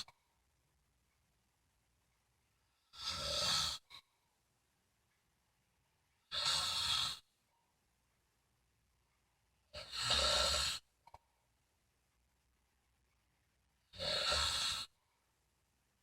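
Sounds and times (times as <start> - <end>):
woman snoring: 2.9 - 3.9, 6.3 - 7.2, 9.8 - 10.8, 14.0 - 14.9.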